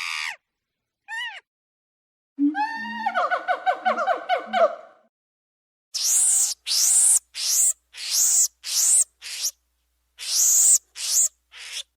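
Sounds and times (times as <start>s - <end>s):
monkey shrieking: 0.0s - 0.4s, 1.1s - 1.5s, 6.0s - 9.5s, 10.2s - 11.9s.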